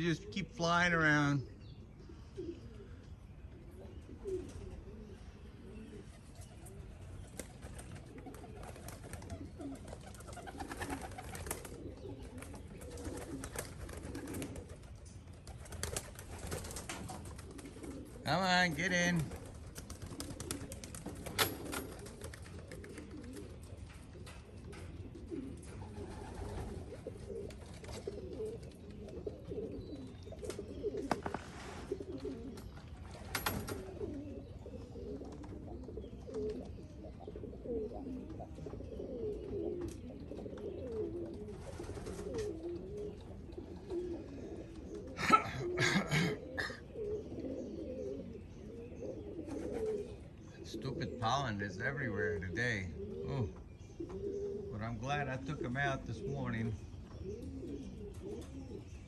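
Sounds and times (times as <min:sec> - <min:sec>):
pigeons cooing: 0:00.0 - 0:59.0.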